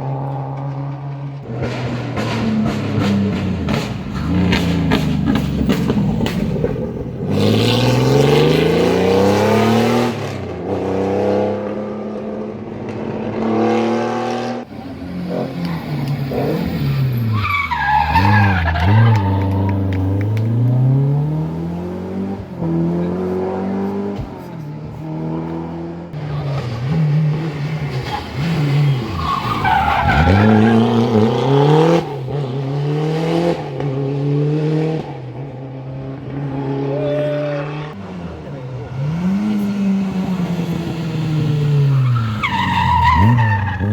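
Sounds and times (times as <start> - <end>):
rally car engines revving: 0.0 - 43.9.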